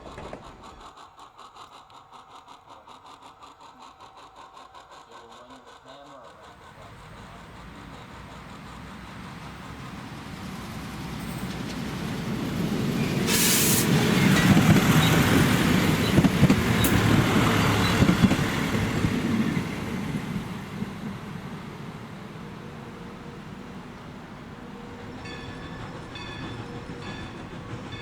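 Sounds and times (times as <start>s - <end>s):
model train rumbling on track: 0.0s - 28.0s
burst of hiss: 13.2s - 14.0s.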